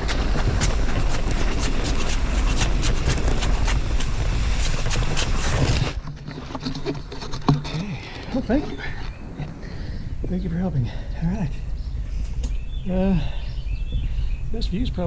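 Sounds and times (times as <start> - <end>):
plastic bag dragged across ground: 0.0 - 7.6.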